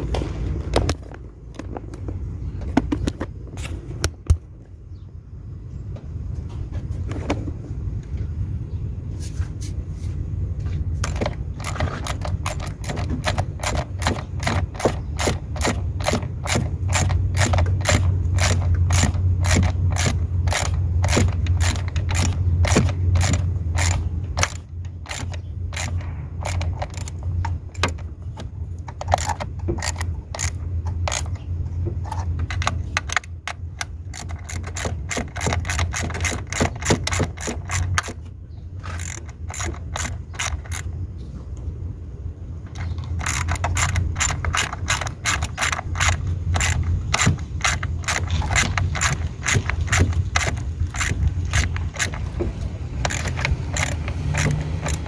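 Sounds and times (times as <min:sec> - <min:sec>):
ratchet wrench clicking: 0:11.0 - 0:40.9, 0:42.7 - 0:55.0.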